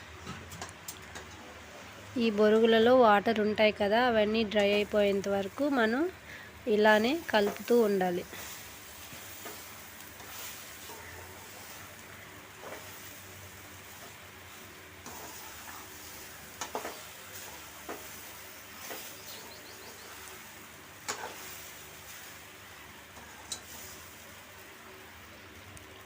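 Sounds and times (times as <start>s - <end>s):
puffed rice sizzling in a pan: 0.0s - 26.0s
ladle scraping and clacking on pan: 21.0s - 21.6s, 23.2s - 23.9s.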